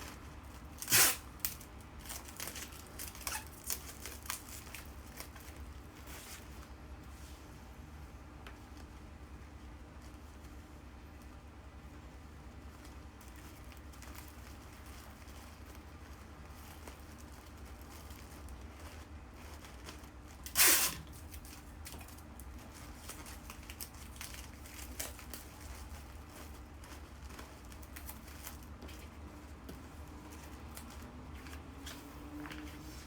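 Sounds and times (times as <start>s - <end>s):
soft crinkling: 0.0s - 33.0s
loud tearing rip: 0.8s - 1.6s, 20.4s - 21.2s.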